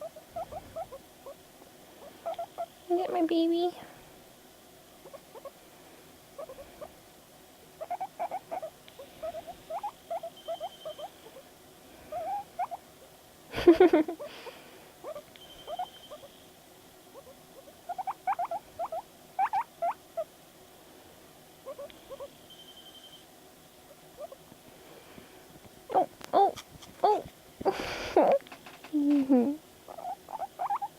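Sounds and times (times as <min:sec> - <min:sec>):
guinea pig squeaky chirps: 0:00.0 - 0:01.4, 0:02.0 - 0:02.8, 0:05.0 - 0:05.6, 0:06.4 - 0:06.9, 0:07.8 - 0:11.4, 0:12.1 - 0:12.8, 0:15.0 - 0:16.4, 0:17.1 - 0:20.3, 0:21.6 - 0:23.2, 0:23.9 - 0:24.4, 0:29.9 - 0:30.9.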